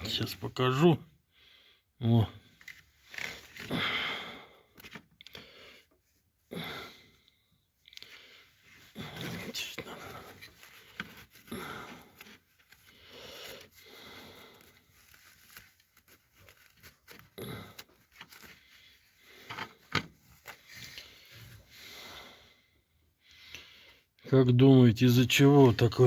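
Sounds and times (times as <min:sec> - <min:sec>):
rustling handling noises: 0:02.5 - 0:03.7, 0:04.7 - 0:06.4, 0:07.7 - 0:21.8.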